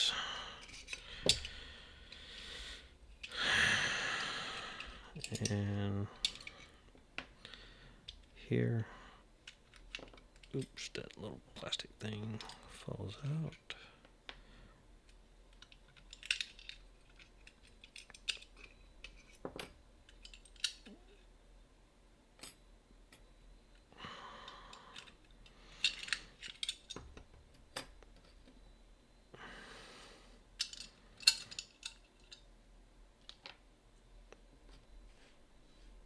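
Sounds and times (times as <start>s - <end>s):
metal lock parts clinking: 4.8s - 6.8s, 9.5s - 10.9s, 15.5s - 21.0s, 24.9s - 28.6s, 30.6s - 32.5s.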